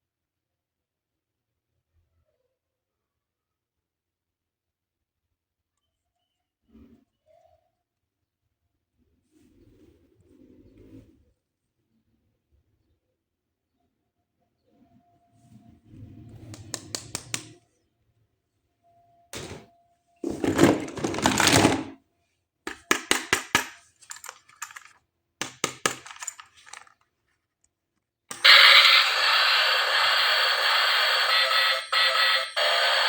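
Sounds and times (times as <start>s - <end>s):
plastic clicks and rustling: 20.2s - 22.0s, 22.7s - 27.1s
electronic toy sound effect: 28.3s - 33.0s.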